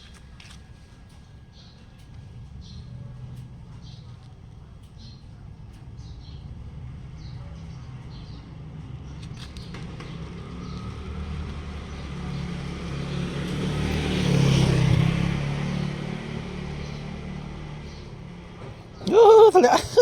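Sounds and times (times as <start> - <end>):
vehicle passing by: 6.8 - 20.0.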